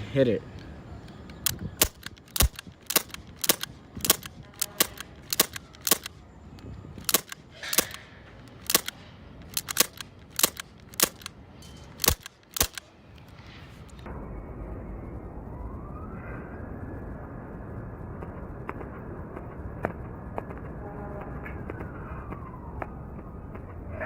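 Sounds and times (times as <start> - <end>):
airsoft pistol shots: 1.4 - 6.2, 7.0 - 8.0, 8.6 - 11.3, 12.0 - 12.8.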